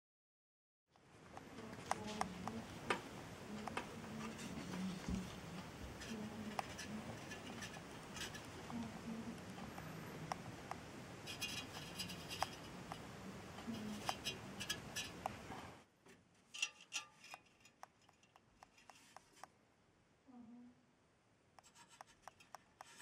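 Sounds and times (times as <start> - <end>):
small parts clicking and tapping: 16.5 - 19.5, 21.6 - 23.0.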